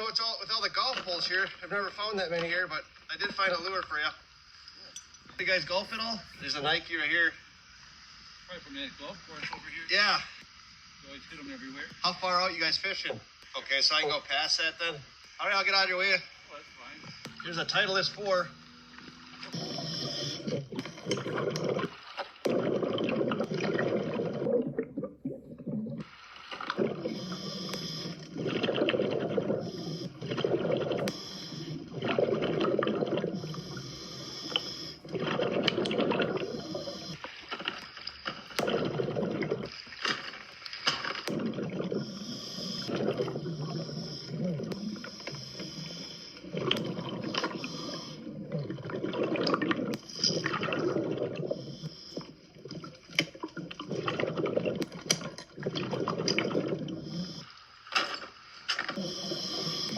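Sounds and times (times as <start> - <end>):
bubbling water: 0.0 - 59.9
diver breathing through regulator: 17.0 - 26.1, 26.7 - 37.5, 41.2 - 52.7, 53.6 - 57.8, 58.8 - 59.9.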